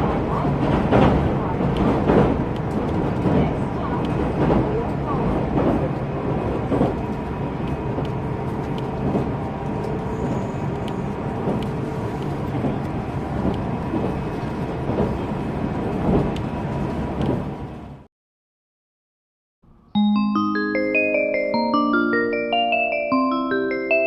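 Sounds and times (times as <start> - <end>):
train running rumble: 0.0 - 18.0.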